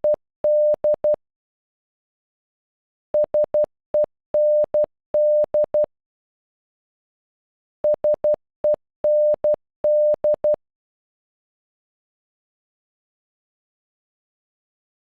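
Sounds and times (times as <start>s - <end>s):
morse code beeps: 0.0s - 1.2s, 3.2s - 5.9s, 9.1s - 10.6s.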